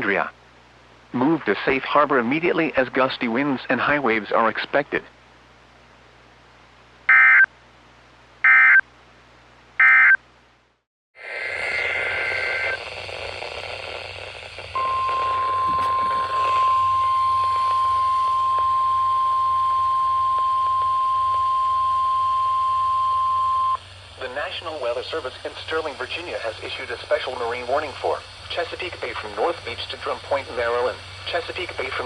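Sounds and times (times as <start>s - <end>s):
single-pitch warning alarm tone: 9.8s - 10.2s, 14.8s - 23.8s
hissy radio audio: 11.2s - 32.0s
electronic data bursts: 11.3s - 23.8s
squeal of data tones: 14.8s - 23.8s.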